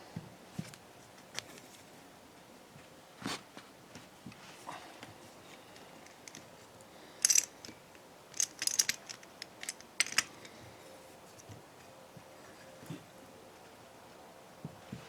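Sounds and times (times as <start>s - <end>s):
metallic clicks of hand tools: 7.2s - 10.6s.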